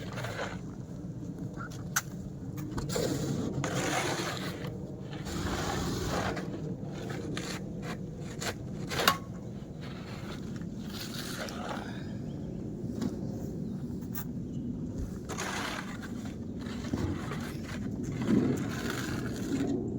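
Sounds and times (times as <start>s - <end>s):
snow being scraped: 2.9s - 9.1s, 9.7s - 11.8s, 15.2s - 19.8s.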